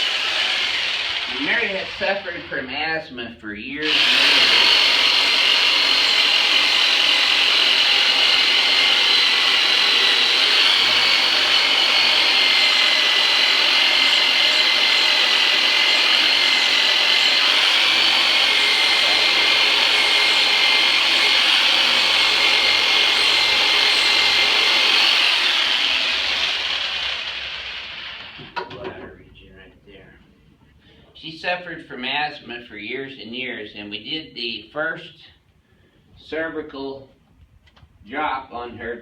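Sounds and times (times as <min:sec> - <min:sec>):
treatment machine whining: 0:00.0 - 0:02.8, 0:03.8 - 0:28.8.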